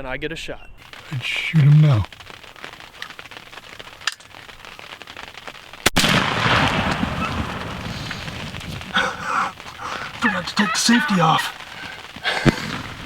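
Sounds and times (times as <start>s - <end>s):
broad rushing noise: 7.2s - 13.0s.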